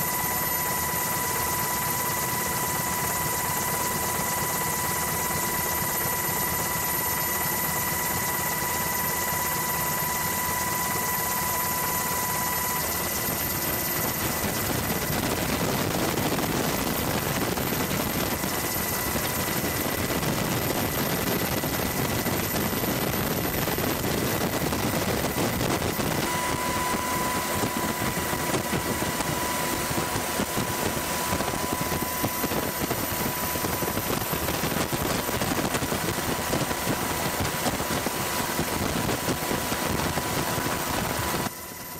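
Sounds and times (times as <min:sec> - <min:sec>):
thin high whine: 0:00.0 - 0:41.9
loud engine drone: 0:23.9 - 0:33.1.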